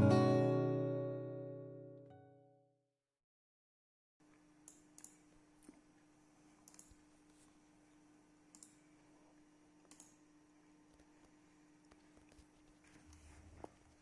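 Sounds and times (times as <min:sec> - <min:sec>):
soft clicks: 0:04.6 - 0:05.8, 0:06.6 - 0:07.0, 0:08.5 - 0:08.8, 0:09.8 - 0:10.2.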